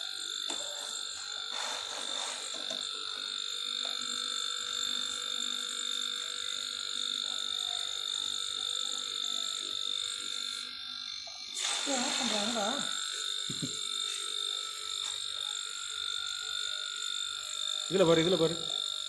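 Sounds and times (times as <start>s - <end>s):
electric motor whining: 0.0s - 7.2s.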